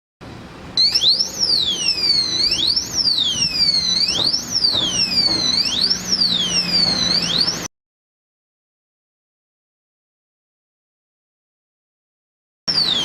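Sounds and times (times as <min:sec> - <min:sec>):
helmet lock alarm siren: 0:00.8 - 0:07.7, 0:12.7 - 0:13.0.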